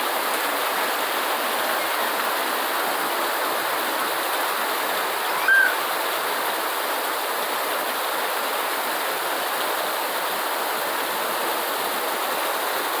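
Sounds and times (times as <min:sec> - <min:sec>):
heavy rain falling: 0:00.0 - 0:13.0
high chirp: 0:05.4 - 0:05.8.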